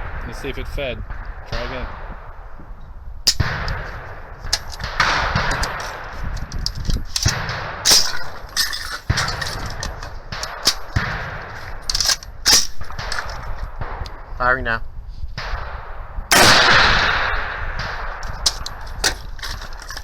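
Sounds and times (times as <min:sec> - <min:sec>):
rifle shots echoing: 0:03.3 - 0:14.4, 0:15.4 - 0:19.9.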